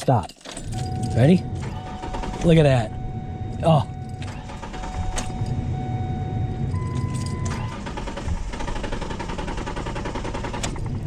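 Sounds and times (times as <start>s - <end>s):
engine cranking by starter: 0.4s - 11.0s.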